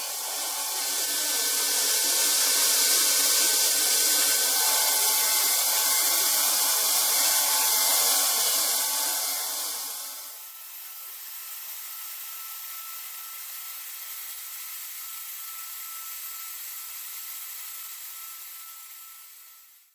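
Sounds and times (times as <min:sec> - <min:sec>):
cnc machine running: 0:00.0 - 0:10.6.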